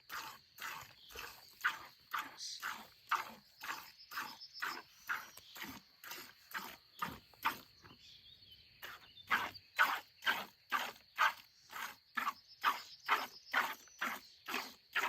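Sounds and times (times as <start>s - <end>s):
milk squirting into a pail: 0.0s - 7.6s.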